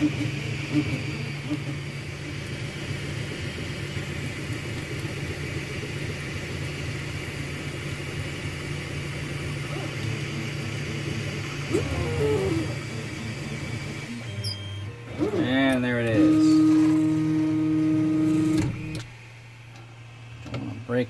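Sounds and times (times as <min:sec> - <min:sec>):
gliding motor whine: 0:00.0 - 0:04.2, 0:09.3 - 0:19.6
printer fans and motors humming: 0:00.0 - 0:21.0.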